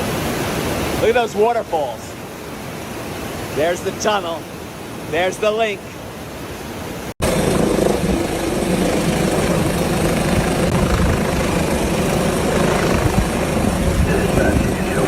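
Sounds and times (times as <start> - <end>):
helicopter drone: 7.2 - 15.0.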